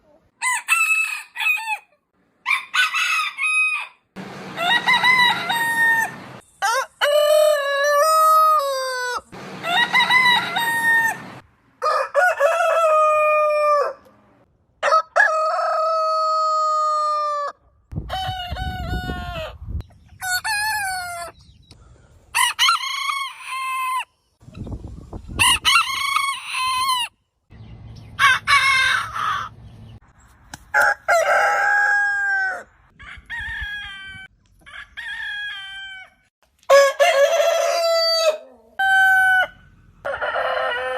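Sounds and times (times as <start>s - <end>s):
roosters crowing: 0.4s - 14.0s, 22.3s - 24.1s, 25.4s - 27.1s, 28.0s - 30.0s, 30.7s - 40.9s.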